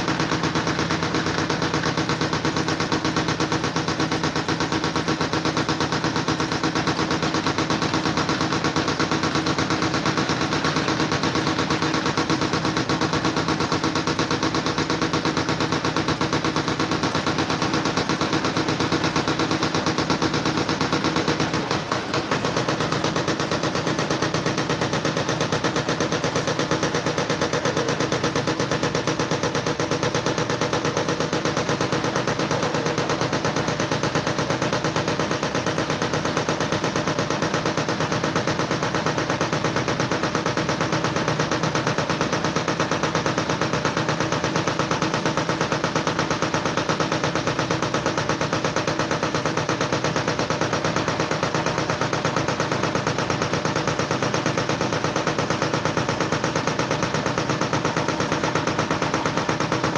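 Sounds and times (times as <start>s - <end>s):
constant hum: 0.0s - 37.3s
mechanical rattle of rapid clicks: 0.0s - 59.9s.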